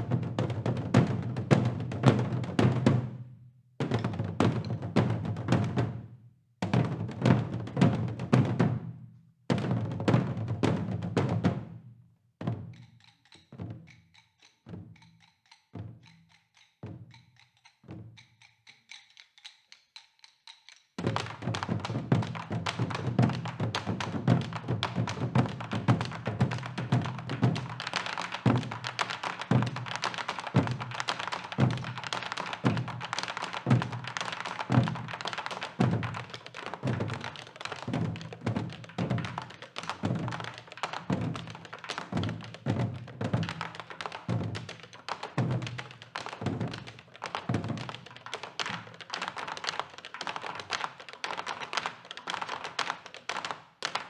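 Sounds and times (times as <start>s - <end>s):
traditional ensemble with percussion: 0.0s - 54.0s
drum strokes: 12.4s - 50.8s.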